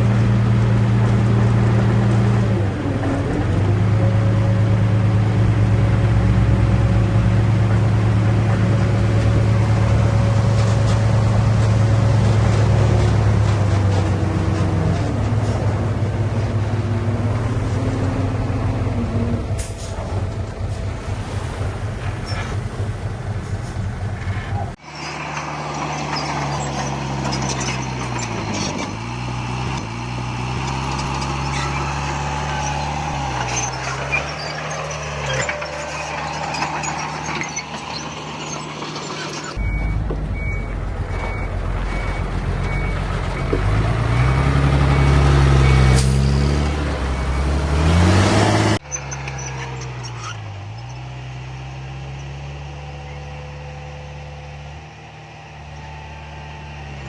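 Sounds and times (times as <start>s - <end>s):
heavy diesel machinery running: 0.0s - 57.0s
reversing alarm beeping: 39.6s - 46.0s.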